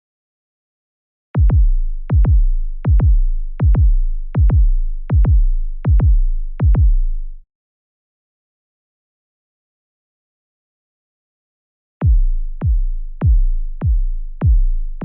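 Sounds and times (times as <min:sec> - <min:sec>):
electronic heartbeat thumps: 0:01.4 - 0:07.0, 0:12.0 - 0:14.7.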